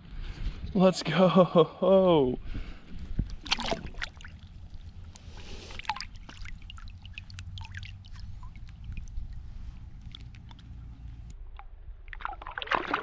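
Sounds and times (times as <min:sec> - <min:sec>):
low rumble: 0:00.0 - 0:12.0
water dripping and trickling: 0:03.2 - 0:11.3
water splashing: 0:03.2 - 0:11.3, 0:12.1 - 0:13.0.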